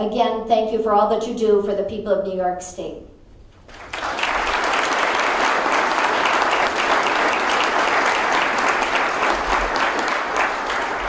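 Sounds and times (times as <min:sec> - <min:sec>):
audience applauding: 0:03.7 - 0:11.0.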